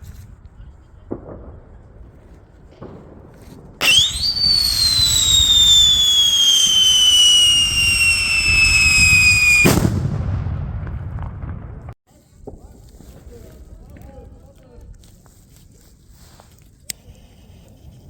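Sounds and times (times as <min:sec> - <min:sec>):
firework whistle: 0:03.8 - 0:09.8.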